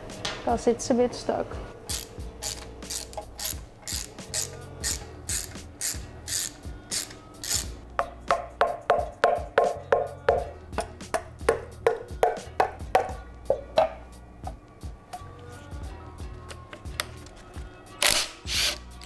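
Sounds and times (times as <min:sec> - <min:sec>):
hand tool rasping on metal: 0:01.8 - 0:13.8, 0:16.4 - 0:19.0.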